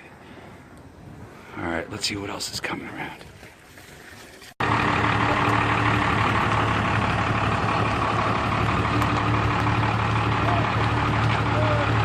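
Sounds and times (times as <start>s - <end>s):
engine idling: 4.6s - 12.0s.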